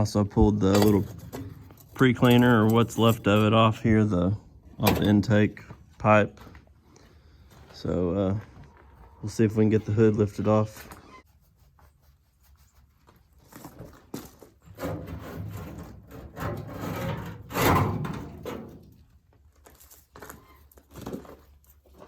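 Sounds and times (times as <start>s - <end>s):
metal scraping and clunking: 0.0s - 5.8s, 14.2s - 19.1s.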